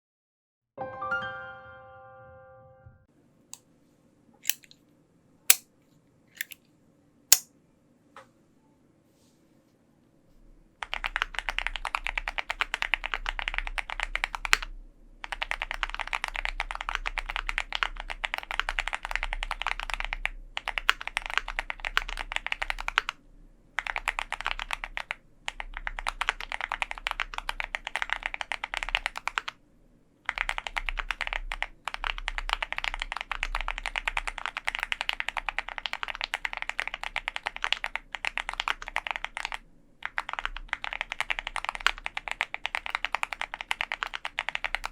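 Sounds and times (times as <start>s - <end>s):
fast mechanical keyboard typing: 10.8s - 23.2s, 23.8s - 29.6s, 30.2s - 44.9s.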